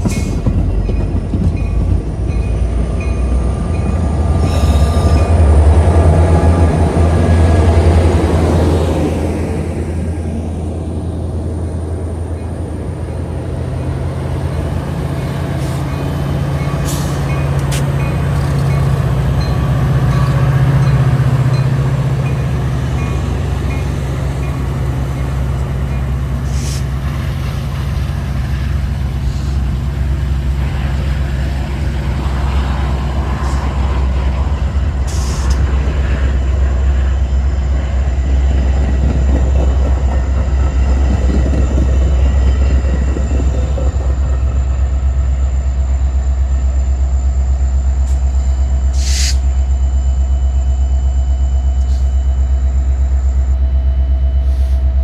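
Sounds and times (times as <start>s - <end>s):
diesel train engine rumble: 0.0s - 55.0s.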